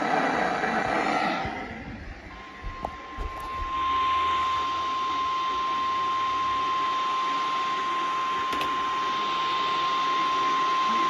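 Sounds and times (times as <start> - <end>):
radio hiss: 0.0 - 4.2.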